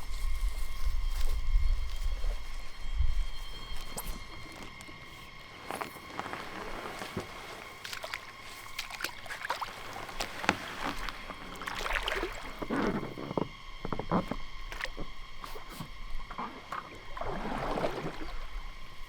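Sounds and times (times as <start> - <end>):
paddle splashing in water: 4.3 - 19.0.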